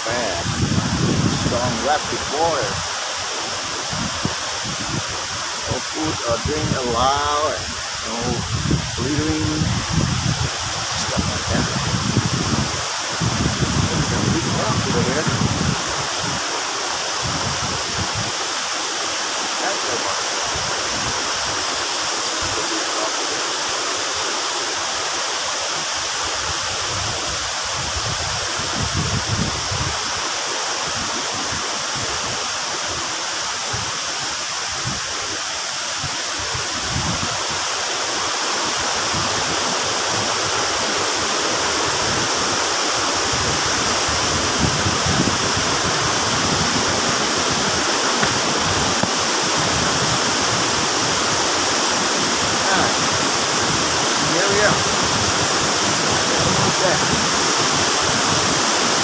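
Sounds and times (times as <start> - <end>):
rush of rapids and waterfall: 0.0 - 59.0.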